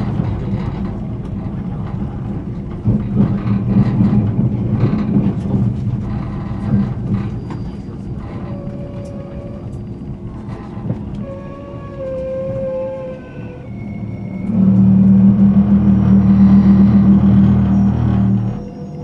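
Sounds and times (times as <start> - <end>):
train wheels and motors rumbling: 0.0 - 19.0
high squealing tone: 10.5 - 19.0.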